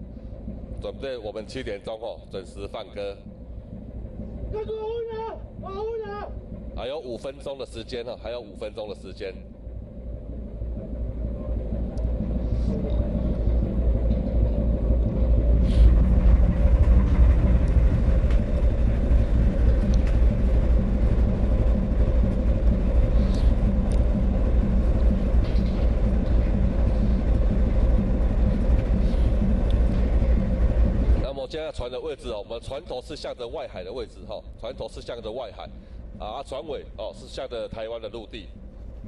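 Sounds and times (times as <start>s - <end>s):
boat engine rumbling: 0.0s - 39.0s.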